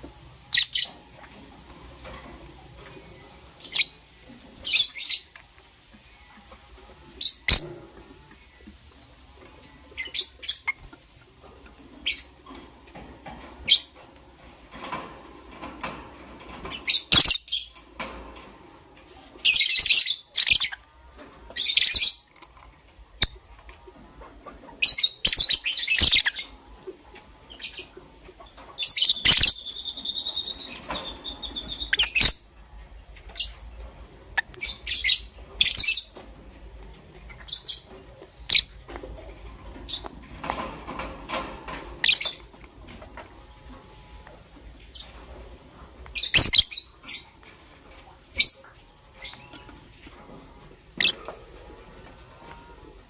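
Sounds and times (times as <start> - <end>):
lovebirds chirping: 0.5 - 1.1, 2.9 - 4.0, 4.6 - 5.4, 8.4 - 11.0, 16.6 - 17.8, 19.4 - 22.4, 24.7 - 26.6, 27.4 - 36.2, 37.2 - 38.8, 41.8 - 42.6, 46.0 - 47.6, 48.4 - 49.9, 51.0 - 51.2.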